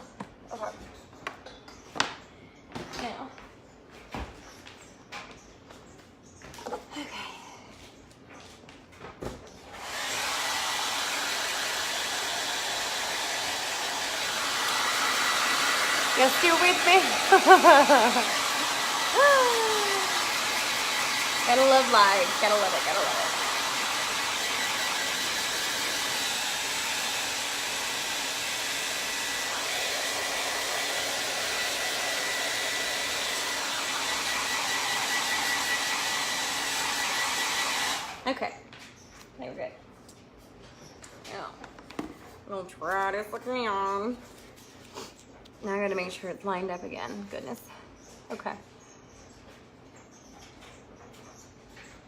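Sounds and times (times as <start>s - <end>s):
hair dryer running: 9.7s - 38.4s.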